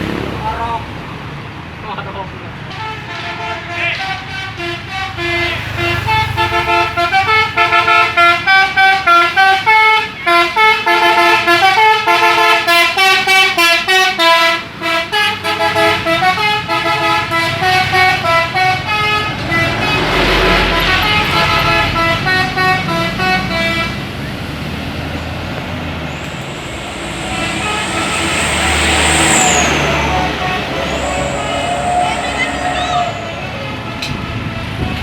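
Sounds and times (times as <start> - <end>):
bus horn playing fast melody: 2.7 - 24.1, 26.2 - 35.0
deep engine rumble: 16.8 - 35.0.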